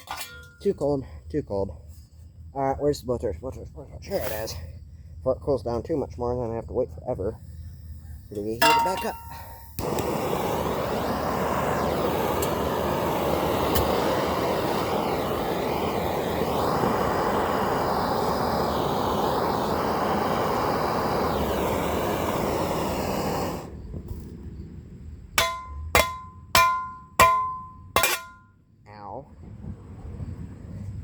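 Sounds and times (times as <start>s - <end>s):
burner rushing: 8.6s - 24.7s.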